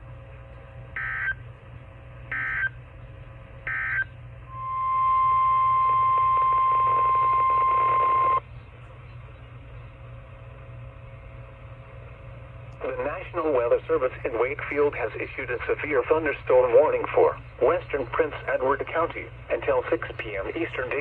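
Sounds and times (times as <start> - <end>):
low hum: 0.0 - 21.0
radio hiss: 4.5 - 8.4, 12.8 - 21.0.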